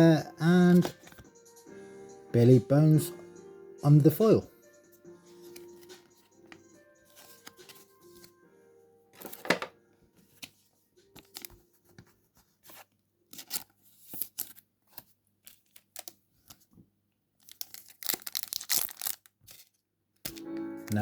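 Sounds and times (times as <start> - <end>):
foil wrapper tearing and crinkling: 17.4 - 20.4.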